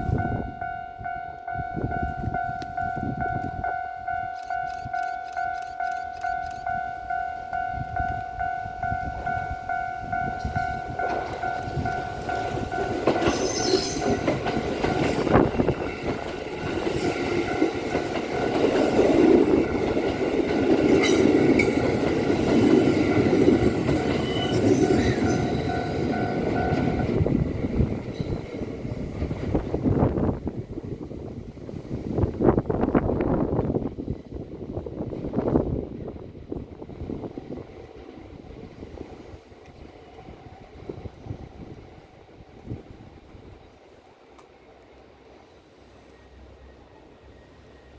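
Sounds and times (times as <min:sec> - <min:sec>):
two-tone crossing warning bell: 0:00.0 - 0:30.3
train passing: 0:00.0 - 0:47.9.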